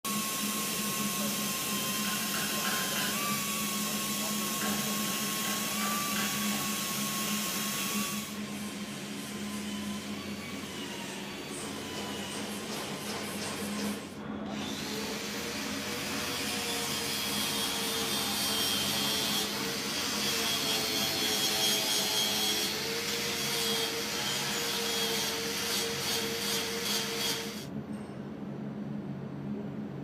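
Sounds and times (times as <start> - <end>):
power tool whining: 14.5 - 27.7.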